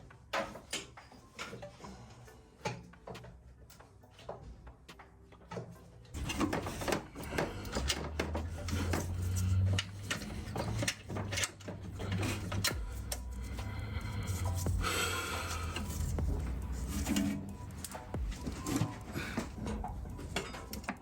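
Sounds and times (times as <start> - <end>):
low rumble: 12.6 - 18.4.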